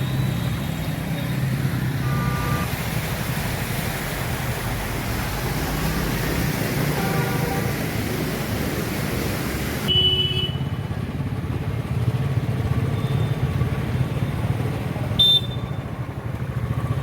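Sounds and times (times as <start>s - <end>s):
short high beep: 2.0s - 2.7s
loud even hiss: 2.3s - 9.9s.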